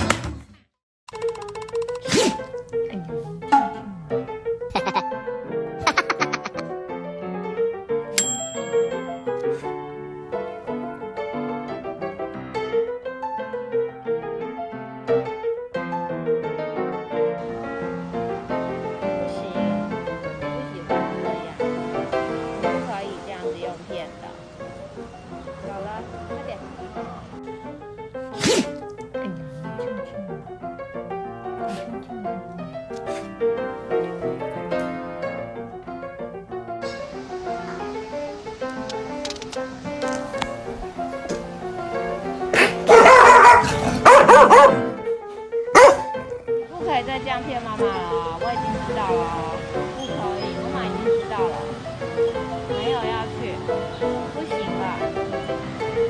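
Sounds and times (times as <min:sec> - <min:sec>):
background piano music: 0:01.1 - 0:56.0
brief high ring: 0:08.2 - 0:09.7.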